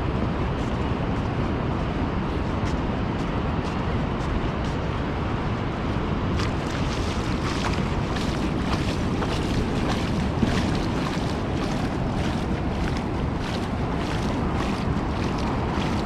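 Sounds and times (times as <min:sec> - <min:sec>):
wind rumbling on microphone: 0:00.0 - 0:16.0
ocean surf: 0:05.0 - 0:16.0.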